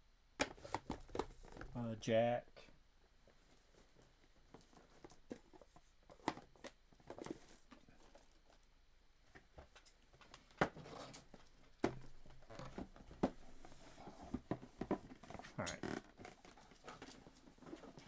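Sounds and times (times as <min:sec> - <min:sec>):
boxes knocking and tapping: 0:11.8 - 0:15.5.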